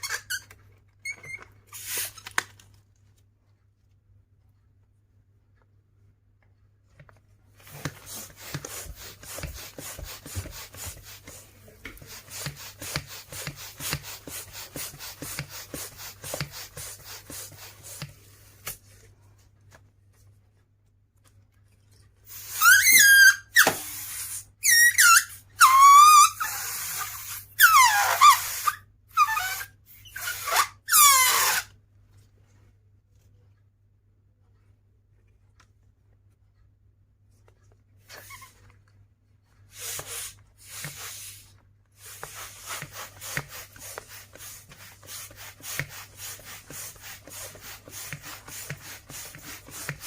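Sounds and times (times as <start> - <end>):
balloons squealing: 0.0 - 2.4, 22.4 - 31.8
balloons scratching: 0.0 - 2.6, 7.5 - 18.8, 22.3 - 31.8, 39.6 - 50.0.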